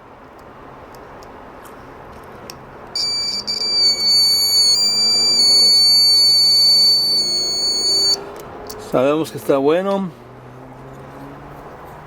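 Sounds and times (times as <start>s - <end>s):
high-pitched buzzer tone: 3.0s - 8.2s.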